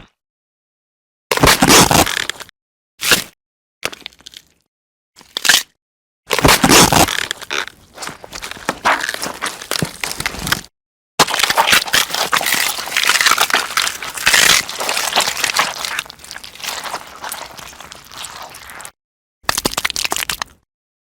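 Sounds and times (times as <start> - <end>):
gore crunching and crushing: 6.3 - 18.9, 19.5 - 20.6.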